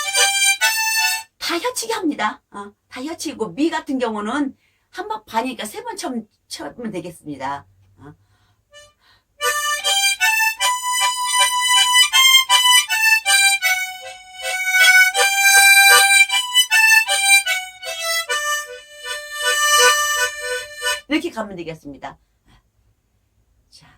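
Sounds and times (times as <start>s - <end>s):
harmonica playing slow melody: 0.0s - 1.3s, 8.7s - 21.1s.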